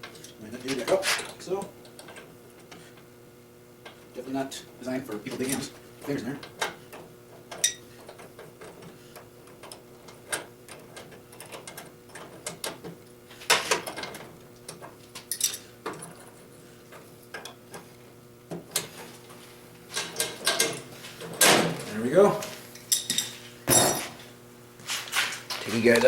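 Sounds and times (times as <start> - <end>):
loud metal clank: 23.7 - 24.2.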